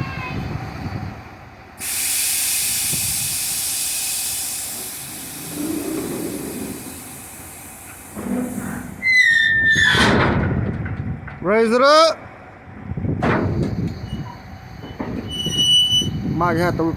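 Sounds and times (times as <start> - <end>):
rush of air: 0.4 - 9.0
compressed air hissing: 1.8 - 9.3
falling squeal: 8.6 - 10.1, 14.0 - 16.2.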